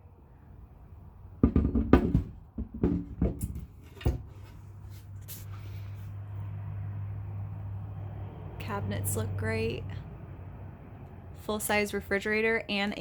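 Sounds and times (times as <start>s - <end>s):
cabinet doors knocking shut: 1.4s - 4.3s.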